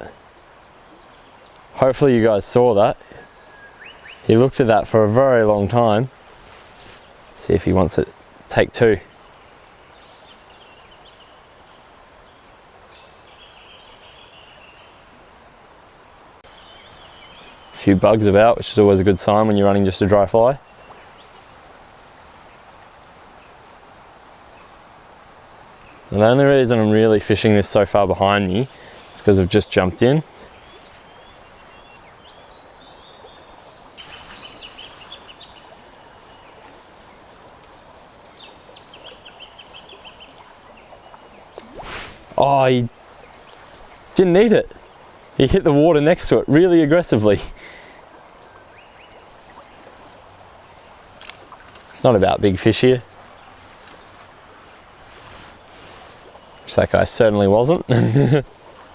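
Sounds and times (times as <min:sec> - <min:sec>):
flowing stream: 0:00.0 - 0:58.9
bird chirping: 0:16.4 - 0:18.0, 0:30.4 - 0:41.6.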